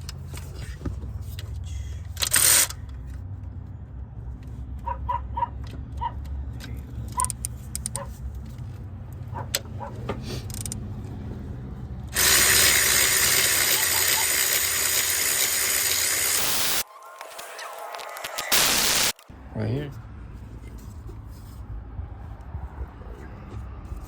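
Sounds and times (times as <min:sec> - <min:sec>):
power tool motor running: 0:12.2 - 0:16.8, 0:18.3 - 0:19.2.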